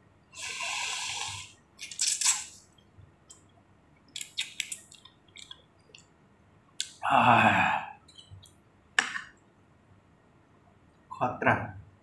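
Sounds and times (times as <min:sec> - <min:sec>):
person slurping soup: 0:00.4 - 0:01.6.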